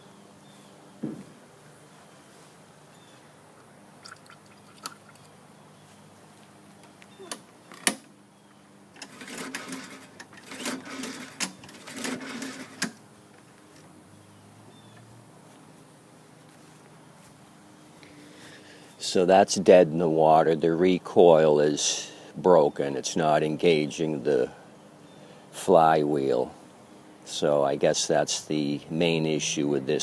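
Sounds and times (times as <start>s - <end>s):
sharp knock: 1.0s - 1.3s
recoil starter cord whirring: 8.9s - 13.0s.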